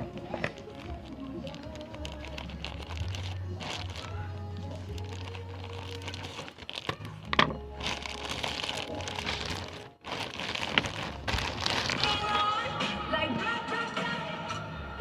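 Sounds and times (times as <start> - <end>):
packaging crinkling and rustling: 0.0 - 12.4
background music: 0.0 - 15.0
sharp cracks of packaging: 4.9 - 12.2.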